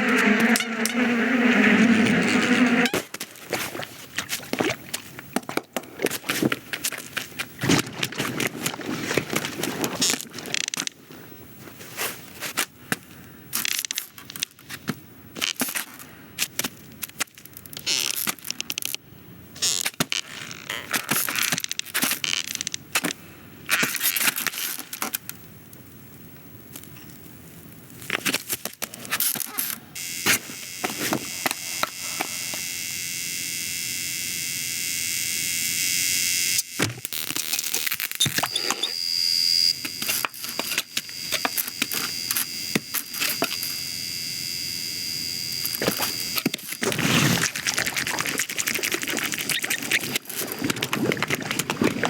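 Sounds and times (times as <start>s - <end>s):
small clicks and crackles: 3.1s - 19.0s, 19.6s - 29.8s, 45.6s - 52.0s.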